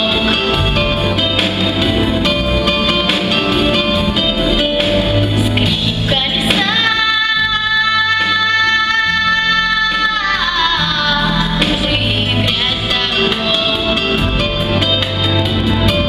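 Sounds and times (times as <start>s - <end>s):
guitar accompaniment: 0.0s - 16.0s
girl singing a pop song: 5.4s - 14.4s.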